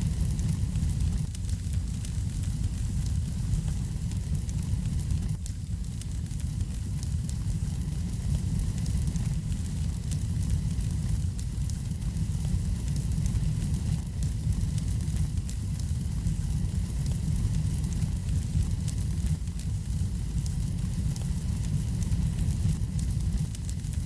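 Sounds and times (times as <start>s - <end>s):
fire crackling in fireplace: 0.0s - 24.0s.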